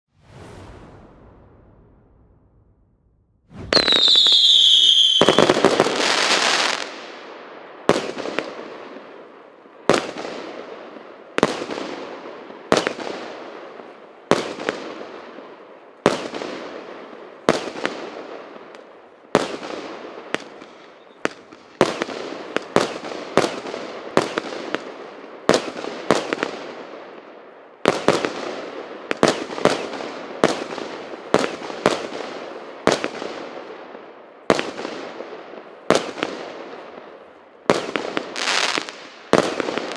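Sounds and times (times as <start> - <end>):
fireworks bangs with hiss and crackle: 3.4 - 39.9.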